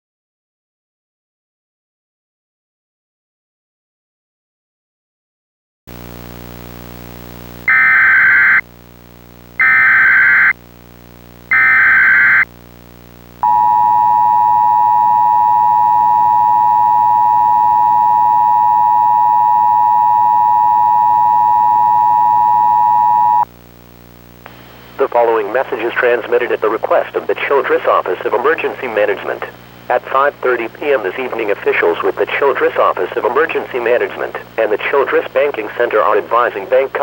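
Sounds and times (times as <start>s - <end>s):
low buzzing hum: 8.6s - 25.0s
two-tone attention signal: 13.4s - 23.4s.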